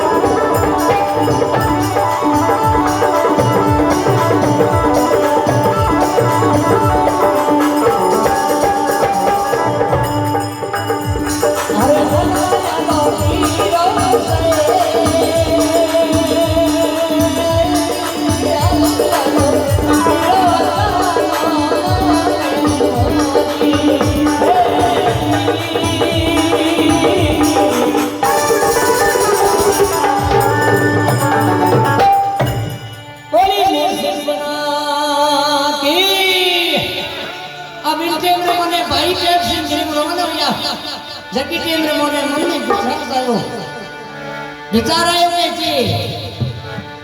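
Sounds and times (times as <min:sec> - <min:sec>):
hand drum: 0:00.0 - 0:33.7
rattling percussion: 0:00.0 - 0:34.5.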